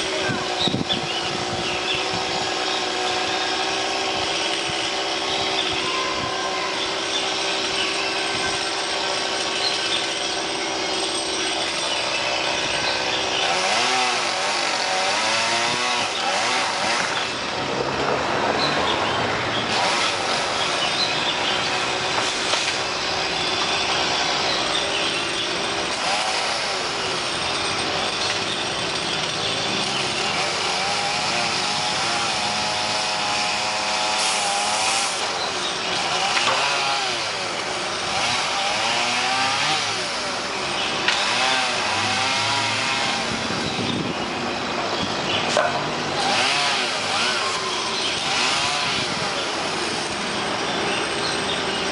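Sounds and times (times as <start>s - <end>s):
chainsaw cutting branches: 0.0s - 51.9s.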